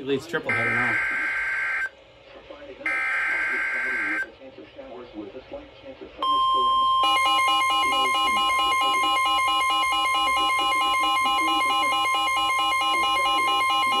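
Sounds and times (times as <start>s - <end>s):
rapid alternating electronic beeps: 0.4s - 1.9s, 2.9s - 4.3s, 6.2s - 14.0s
steady alarm tone: 0.4s - 1.9s, 2.9s - 4.3s, 6.2s - 14.0s.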